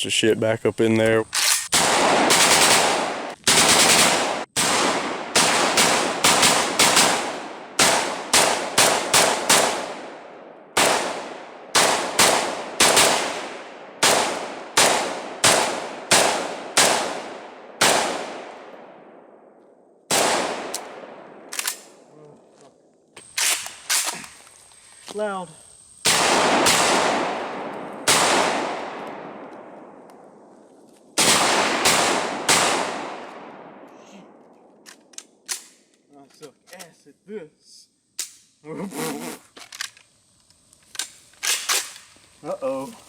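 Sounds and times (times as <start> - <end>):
suppressed pistol shots: 10.8 - 18.6, 20.1 - 21.9, 26.0 - 30.1, 31.2 - 33.9.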